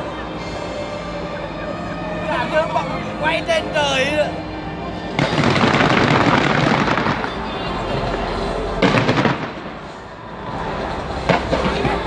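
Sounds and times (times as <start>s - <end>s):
fireworks crackling and bursting: 5.1s - 12.0s.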